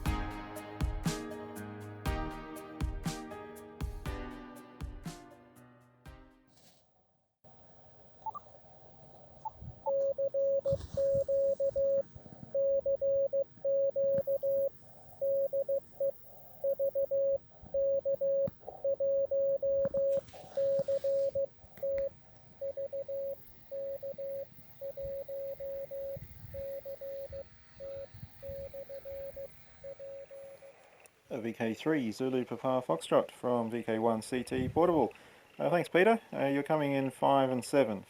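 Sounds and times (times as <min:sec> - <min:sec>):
morse code tone: 0:09.4 - 0:30.8.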